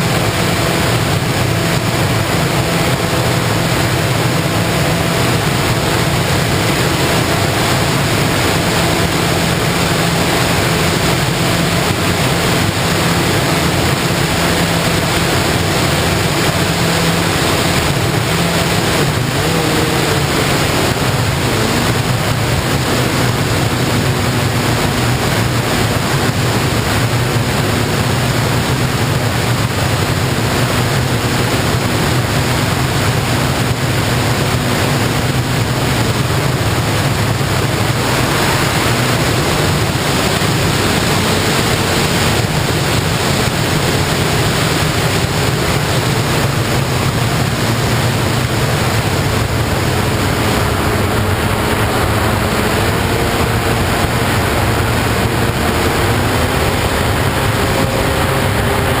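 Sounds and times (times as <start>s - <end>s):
model plane motor hum: 0.0s - 59.0s
wind rushing over microphone: 0.0s - 59.0s.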